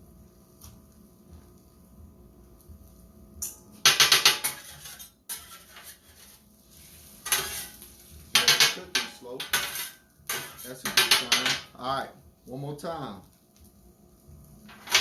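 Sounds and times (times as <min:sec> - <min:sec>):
metal spatulas scraping grill: 0:03.4 - 0:11.5.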